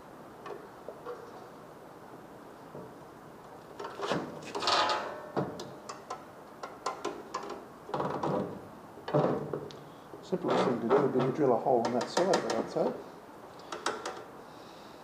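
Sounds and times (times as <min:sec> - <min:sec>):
tools clicking and knocking: 0:03.8 - 0:08.4, 0:13.7 - 0:14.3.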